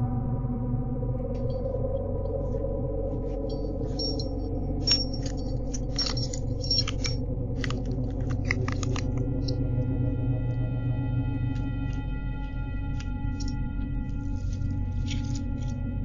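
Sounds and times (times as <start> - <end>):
low steady hum: 0.0 - 16.0
keys jangling: 3.4 - 9.5, 13.4 - 13.6, 14.4 - 15.7
keys clicking in door lock: 3.5 - 9.5.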